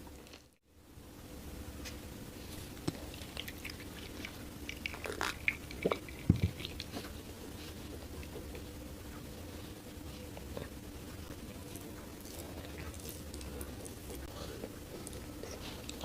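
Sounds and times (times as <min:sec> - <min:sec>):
faint steady hum: 0:00.0 - 0:16.0
chewing and biting food: 0:02.6 - 0:08.7, 0:10.2 - 0:16.0.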